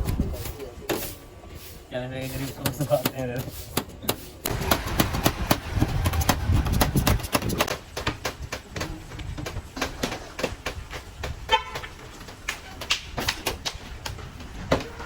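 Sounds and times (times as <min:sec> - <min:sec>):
steady noisy rumble: 0:00.0 - 0:09.8
rapid irregular knocking and clattering: 0:04.5 - 0:15.0.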